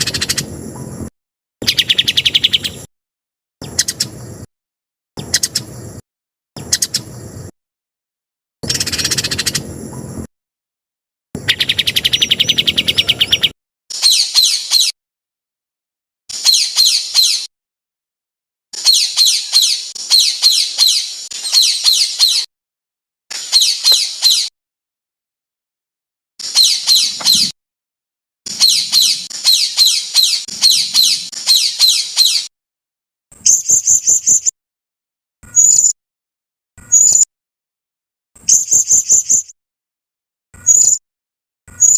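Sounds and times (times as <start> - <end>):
fast high bird trill: 0.0 - 0.5, 1.6 - 2.9, 8.6 - 9.7, 11.4 - 15.0, 18.8 - 22.5, 26.4 - 27.6, 28.5 - 32.5
high bird chirping: 0.0 - 2.9, 3.6 - 4.3, 5.2 - 5.9, 6.6 - 7.2, 8.6 - 10.1, 11.4 - 15.0, 16.3 - 17.5, 18.8 - 22.5, 23.4 - 24.5, 26.4 - 27.6, 28.5 - 32.5, 33.4 - 34.5, 35.4 - 36.0, 36.8 - 37.3, 38.5 - 39.5, 40.6 - 41.0.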